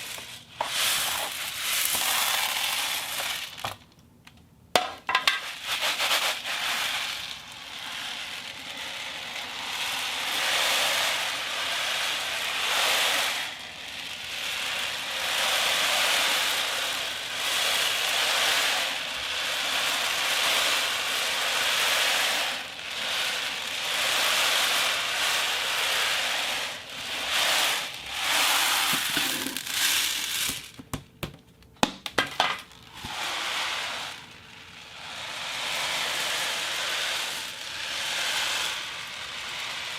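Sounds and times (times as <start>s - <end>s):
grainy hissing rush: 0.0s - 3.8s, 5.2s - 30.8s, 32.8s - 39.9s.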